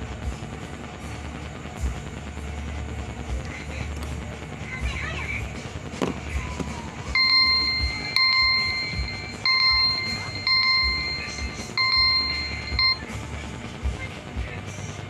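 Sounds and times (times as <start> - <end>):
phone alarm beeping: 7.0 - 13.3.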